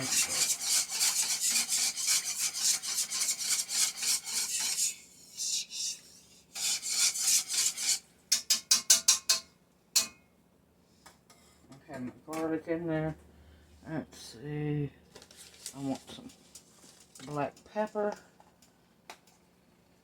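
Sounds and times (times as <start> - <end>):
utensil stirring sauce in pot: 0.0 - 10.1.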